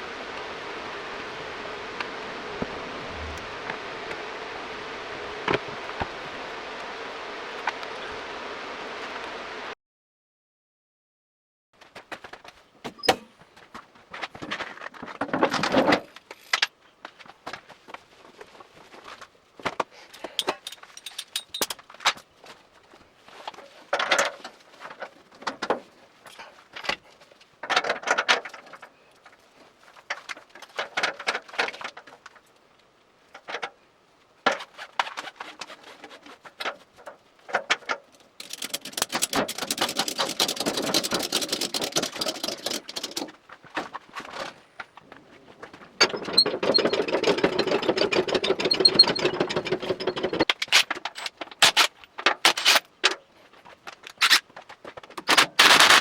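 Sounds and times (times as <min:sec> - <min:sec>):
tools clicking and knocking: 0:20.1 - 0:22.2, 0:37.5 - 0:43.4, 0:46.0 - 0:53.2.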